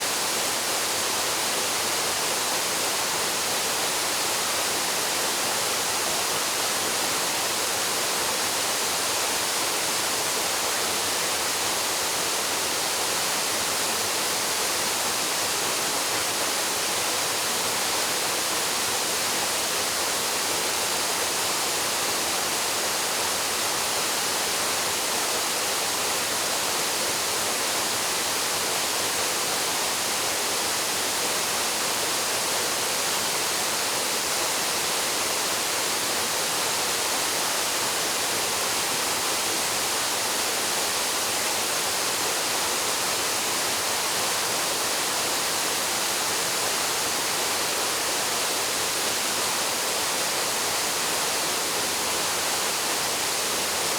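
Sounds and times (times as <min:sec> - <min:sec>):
waterfall rushing into pool: 0:00.0 - 0:53.9.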